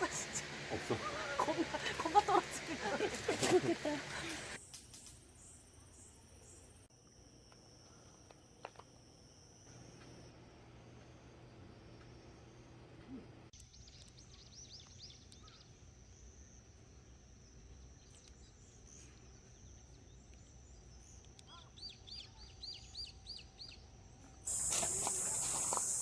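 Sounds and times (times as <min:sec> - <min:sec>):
loud steady hiss: 0:00.0 - 0:04.6, 0:24.5 - 0:26.0
small bird calling: 0:00.0 - 0:04.6, 0:24.5 - 0:26.0.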